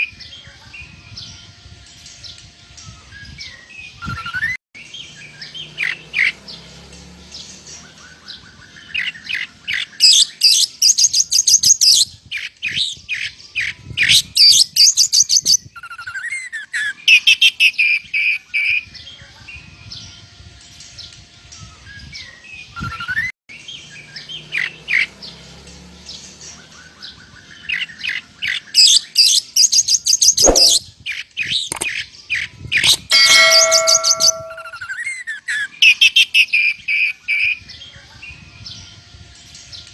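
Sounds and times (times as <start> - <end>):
songbird singing with mimicry: 27.1 - 34.8.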